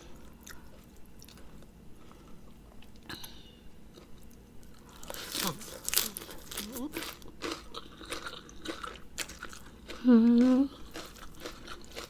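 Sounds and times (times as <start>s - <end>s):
chewing and wet mouth noises: 0.1s - 3.2s, 3.9s - 12.0s
person humming mmm: 10.0s - 10.8s.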